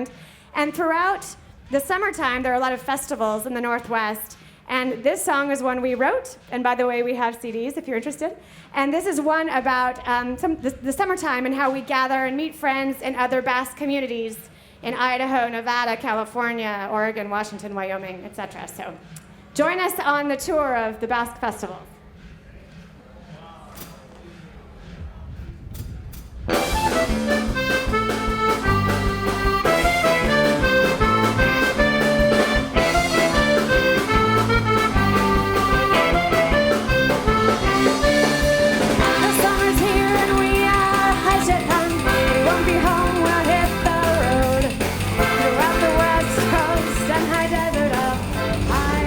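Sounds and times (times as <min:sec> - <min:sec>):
drum kit: 0:25.6 - 0:49.0
button accordion: 0:26.5 - 0:49.0.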